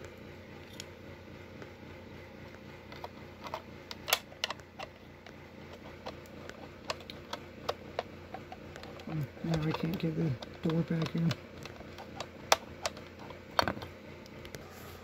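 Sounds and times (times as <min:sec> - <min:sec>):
steady low hum: 0:00.0 - 0:15.0
plastic clicks and knocks: 0:05.8 - 0:13.9.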